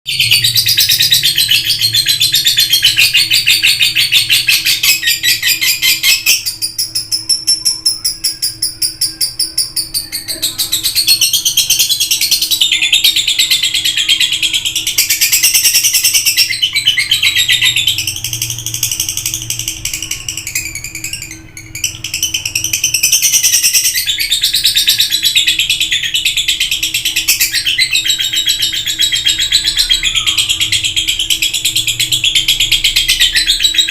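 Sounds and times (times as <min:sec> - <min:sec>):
lovebird chattering: 0:00.1 - 0:33.9.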